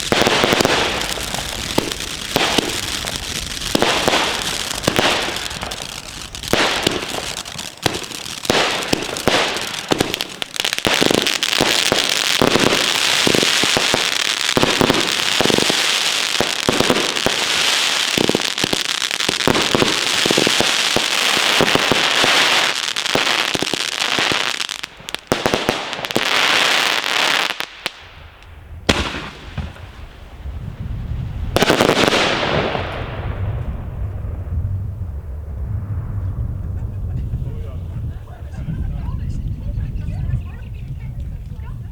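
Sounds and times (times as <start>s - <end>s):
rapid firework bangs: 0.0s - 28.2s, 28.8s - 30.6s, 31.5s - 33.6s
loud firework bursts: 0.0s - 37.1s
firework crackling: 0.0s - 41.9s
low rumble: 33.1s - 41.9s.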